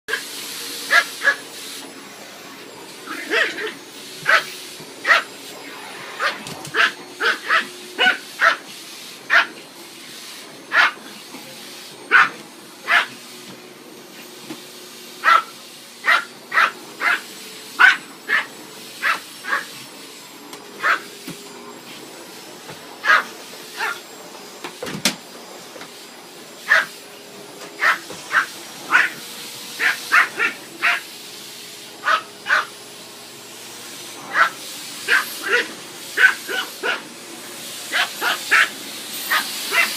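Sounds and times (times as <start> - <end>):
vacuum cleaner running: 0.1 - 39.9
small dog yapping: 6.2 - 8.6, 10.7 - 11.0, 12.1 - 13.2, 15.2 - 17.2, 17.8 - 19.7, 23.0 - 24.0, 26.7 - 26.9, 27.8 - 29.2, 29.8 - 31.0, 32.0 - 32.7, 34.3 - 37.0, 37.9 - 38.7, 39.3 - 39.9.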